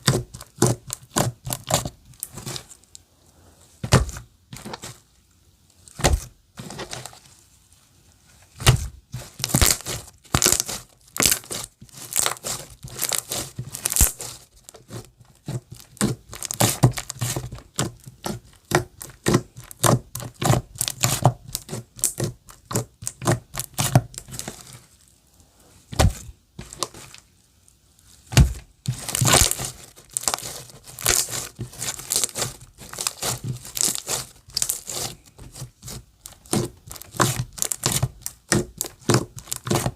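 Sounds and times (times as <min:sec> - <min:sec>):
slime crackling and popping: 0:00.0 - 0:03.0, 0:08.6 - 0:24.6, 0:28.2 - 0:39.9.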